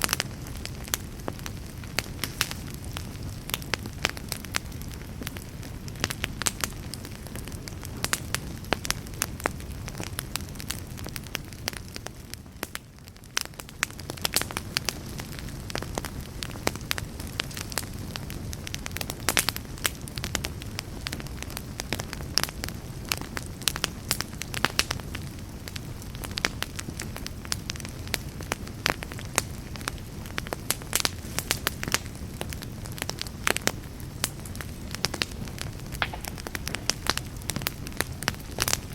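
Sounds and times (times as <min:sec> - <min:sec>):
campfire crackling and popping: 0:00.0 - 0:38.9
low fire rumble: 0:00.0 - 0:38.9.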